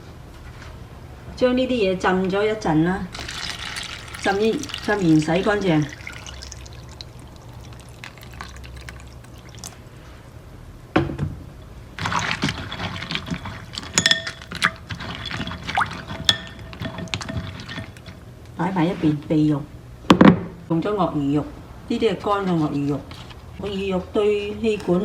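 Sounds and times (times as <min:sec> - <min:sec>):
water sloshing in a bowl: 0:03.1 - 0:10.2, 0:12.0 - 0:18.3
clinks against bowl: 0:13.8 - 0:14.8, 0:16.2 - 0:17.4.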